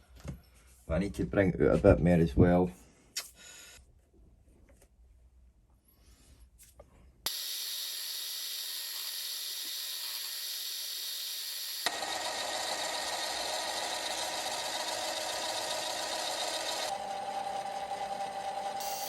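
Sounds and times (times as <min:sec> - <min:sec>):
mini lathe whining: 0:07.3 - 0:19.0.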